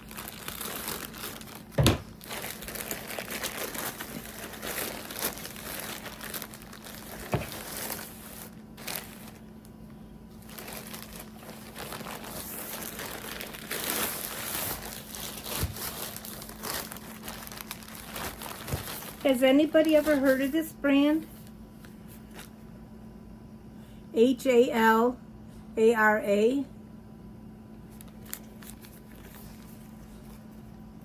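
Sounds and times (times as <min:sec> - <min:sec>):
packaging crinkling: 0:00.0 - 0:22.6, 0:27.9 - 0:30.8
thump: 0:01.8 - 0:02.1.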